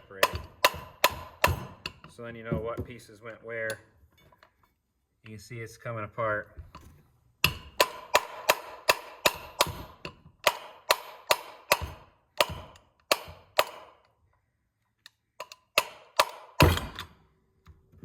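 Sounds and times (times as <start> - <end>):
hammer striking metal: 0.0 - 2.1, 7.4 - 14.0, 15.8 - 17.0.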